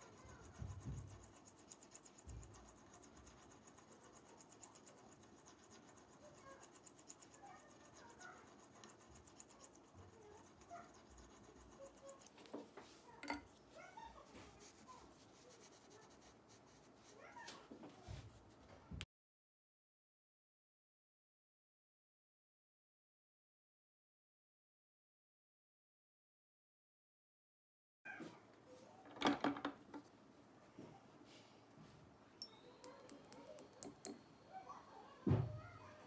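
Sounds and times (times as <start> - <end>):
light scratching: 0.0 - 18.6.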